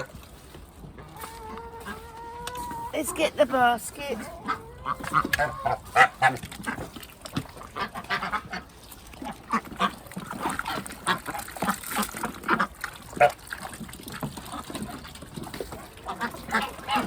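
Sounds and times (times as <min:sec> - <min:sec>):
ducks quacking: 0:00.0 - 0:17.0
goose honking: 0:01.2 - 0:06.8, 0:16.0 - 0:17.0.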